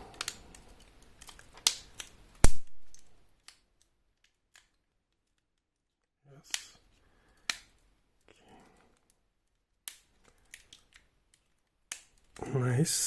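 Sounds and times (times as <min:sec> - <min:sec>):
small plastic clicks: 0:00.0 - 0:12.5
sharp plastic snap: 0:01.2 - 0:04.8, 0:06.5 - 0:06.8, 0:09.8 - 0:12.4.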